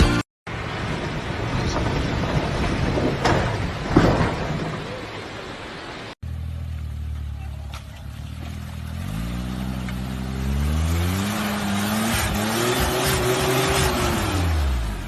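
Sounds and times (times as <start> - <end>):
vehicle engine revving: 6.3 - 15.0.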